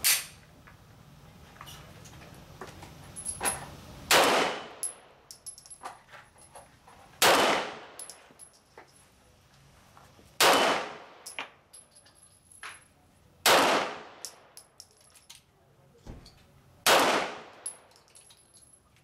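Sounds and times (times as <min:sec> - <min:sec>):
metallic clinks: 0:03.1 - 0:03.7, 0:04.8 - 0:06.7, 0:08.0 - 0:09.0, 0:11.2 - 0:13.0, 0:14.2 - 0:15.5, 0:17.6 - 0:19.0
pistol shots echoing: 0:04.1 - 0:04.8, 0:07.2 - 0:08.0, 0:10.4 - 0:11.2, 0:13.4 - 0:14.4, 0:16.8 - 0:17.7.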